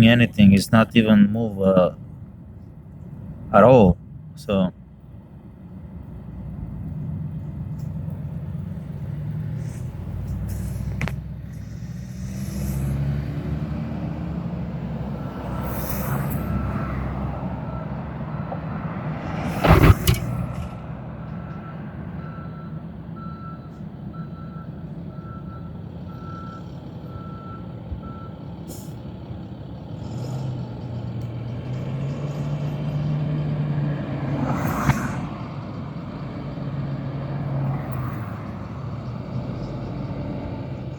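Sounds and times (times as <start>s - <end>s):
truck engine rumbling: 0.0s - 40.9s
reversing beeper: 15.2s - 18.5s.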